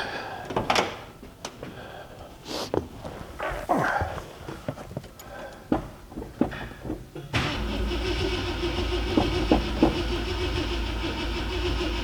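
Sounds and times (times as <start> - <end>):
engine cranking by starter: 7.3 - 12.0.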